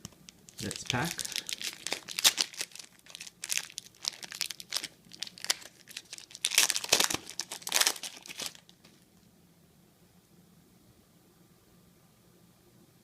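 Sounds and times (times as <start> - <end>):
wrapper tearing and crinkling: 0.5 - 8.9.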